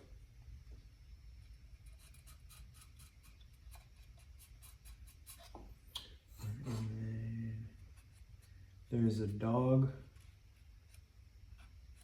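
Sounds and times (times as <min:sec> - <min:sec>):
man humming: 0:06.4 - 0:07.8.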